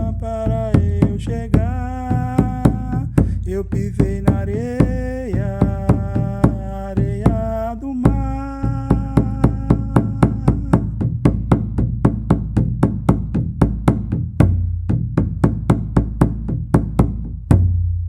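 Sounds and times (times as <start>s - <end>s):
person singing: 0.0s - 10.9s
drum beaten in steady rhythm: 0.0s - 18.0s.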